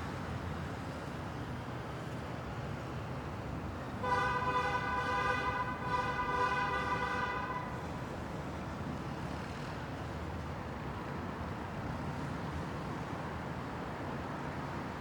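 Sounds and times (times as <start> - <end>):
heavy city traffic rumble: 0.0 - 15.0
vehicle horn honking: 4.0 - 7.7.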